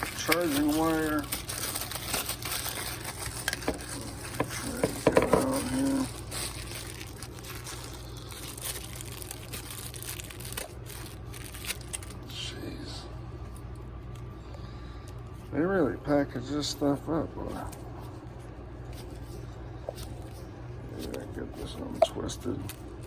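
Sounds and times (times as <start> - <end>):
plastic packaging crinkling: 0.0 - 12.3.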